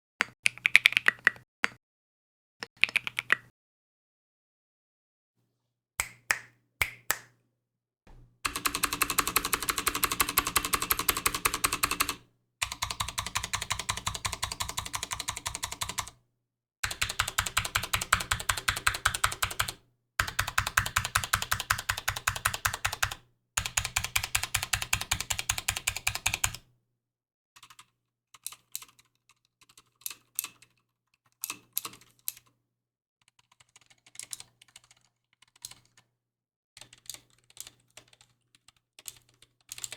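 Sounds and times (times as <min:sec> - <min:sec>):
clicky mechanical keyboard typing: 0:08.5 - 0:16.2, 0:16.8 - 0:26.6, 0:27.6 - 0:30.8, 0:33.2 - 0:36.1, 0:36.8 - 0:39.9.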